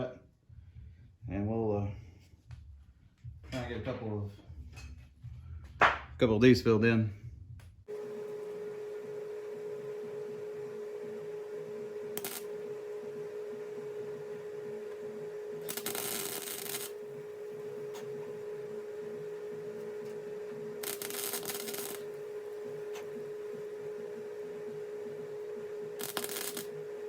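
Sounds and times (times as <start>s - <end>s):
steady hum: 7.1s - 27.0s
welding arc crackling: 12.1s - 12.9s, 15.6s - 23.7s, 25.9s - 27.0s.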